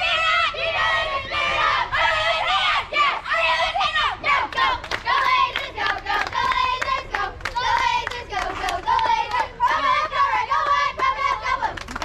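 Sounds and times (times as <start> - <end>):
girls chanting a cheer: 0.0 - 12.0
rhythmic hand claps: 4.5 - 9.9, 10.6 - 12.0.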